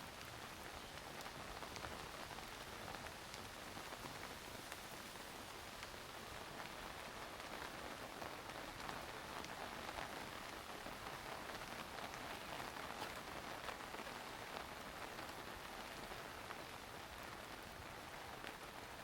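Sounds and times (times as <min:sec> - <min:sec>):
steady rain falling: 0:00.0 - 0:19.0.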